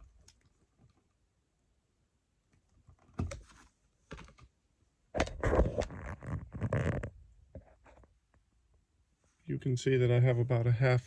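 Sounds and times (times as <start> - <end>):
clicking and handling noise: 0.0 - 1.2.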